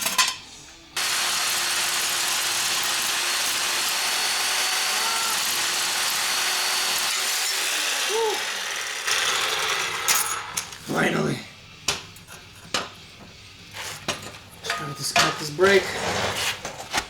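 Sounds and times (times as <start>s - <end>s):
power tool running with hiss: 1.0s - 10.6s.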